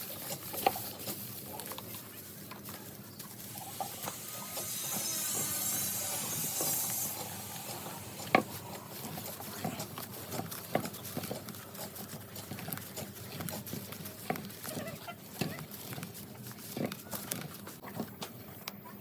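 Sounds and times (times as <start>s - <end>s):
fibre and straw rustling: 0.0s - 18.6s.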